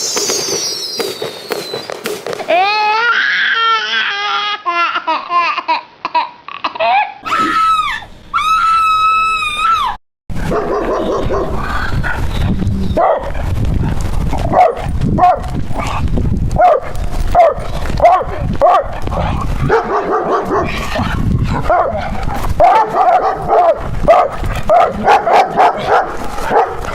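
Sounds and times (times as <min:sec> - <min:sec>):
high wailing cries: 0:02.4 - 0:05.7, 0:06.6 - 0:10.0
dogs barking and yipping: 0:10.3 - 0:26.9.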